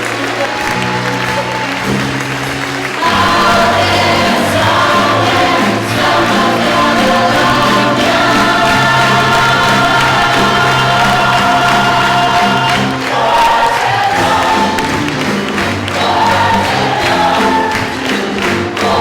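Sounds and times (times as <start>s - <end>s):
instrumental accompaniment: 0.0s - 19.0s
cast singing in chorus: 3.0s - 19.0s.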